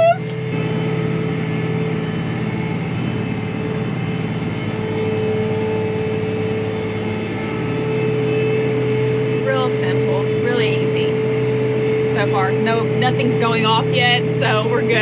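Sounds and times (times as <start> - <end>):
constant whine: 0.0 - 15.0
tractor engine running: 0.0 - 15.0.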